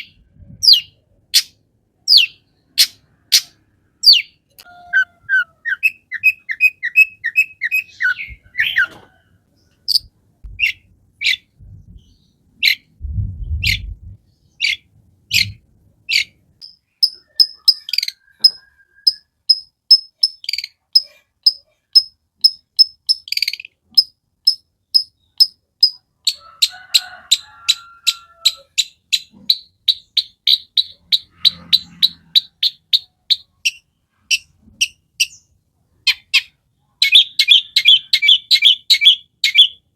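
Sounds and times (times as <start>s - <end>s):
bird song with sharp repeated notes: 0.0s - 26.4s, 27.4s - 39.9s
low bumps: 10.4s - 10.9s, 11.6s - 12.2s, 12.9s - 14.3s.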